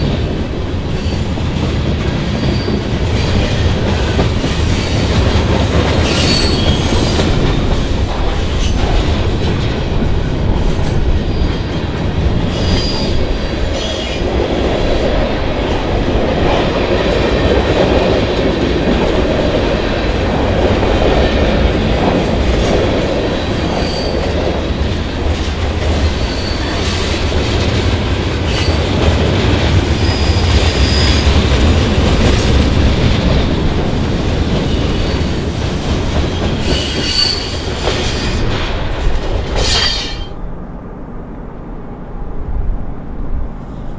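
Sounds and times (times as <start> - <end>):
freight train cars rolling past: 0.0 - 43.9
high wheel squeals: 6.0 - 7.1, 26.2 - 26.8, 36.6 - 38.4, 39.6 - 40.4.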